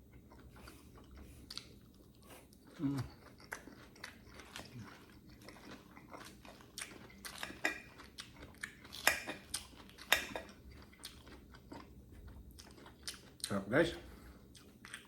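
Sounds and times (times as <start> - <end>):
close chewing with mouth clicks: 0.0 - 15.0.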